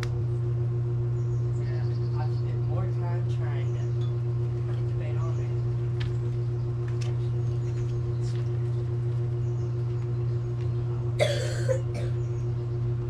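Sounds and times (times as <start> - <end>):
steady low hum: 0.0 - 13.0
person coughing: 11.2 - 12.2.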